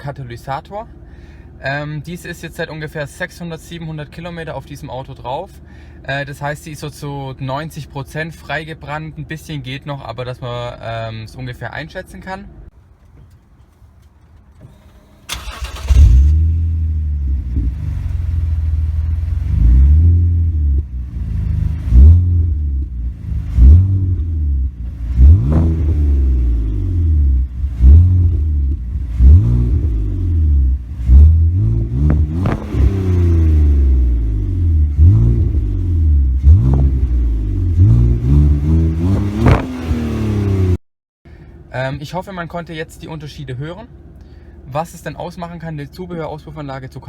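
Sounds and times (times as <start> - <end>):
car engine idling and revving: 12.0 - 46.6
car engine starting: 12.4 - 46.6.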